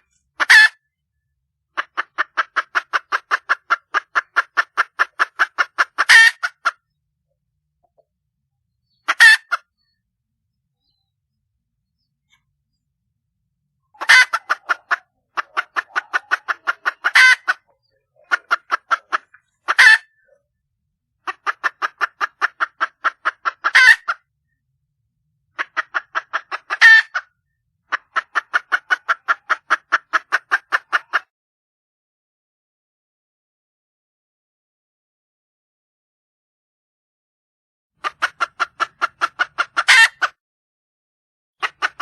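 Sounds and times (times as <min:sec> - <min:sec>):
hen clucking and squawking: 0:00.0 - 0:00.8, 0:01.7 - 0:07.0, 0:08.8 - 0:10.0, 0:13.8 - 0:20.4, 0:21.2 - 0:24.3, 0:25.5 - 0:31.3, 0:38.0 - 0:40.4, 0:41.6 - 0:42.0.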